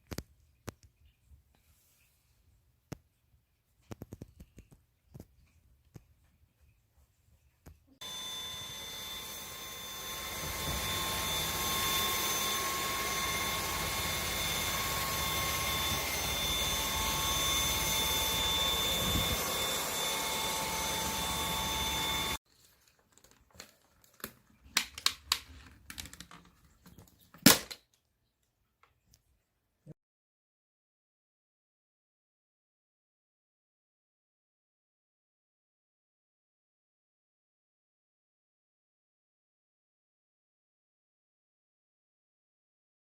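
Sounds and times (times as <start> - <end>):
vacuum cleaner motor whining: 8.0 - 22.4
clicks and knocks of handling: 22.5 - 28.0
loud plastic snap: 27.4 - 27.8.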